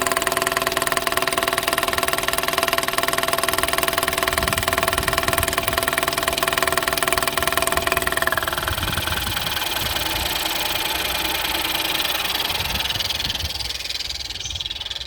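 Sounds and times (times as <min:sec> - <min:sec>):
car engine idling: 0:00.0 - 0:15.0
rapid engine tapping: 0:00.0 - 0:15.0.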